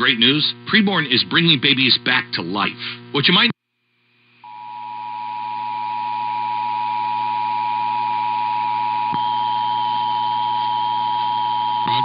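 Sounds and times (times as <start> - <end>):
radio hiss: 0.0 - 3.6, 8.1 - 12.0.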